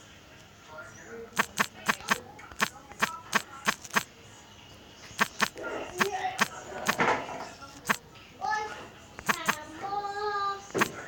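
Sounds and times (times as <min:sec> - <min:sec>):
sharp taps: 0:01.4 - 0:04.1, 0:05.2 - 0:07.1, 0:07.8 - 0:08.0, 0:09.2 - 0:09.6, 0:10.7 - 0:11.0.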